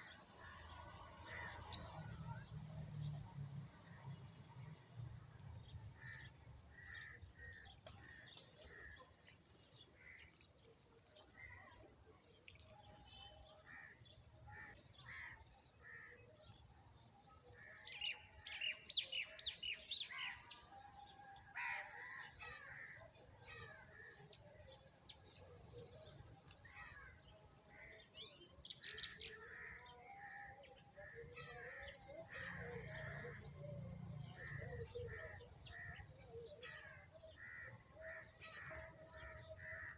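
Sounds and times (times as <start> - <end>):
sparrows chirping: 12.4 - 39.9.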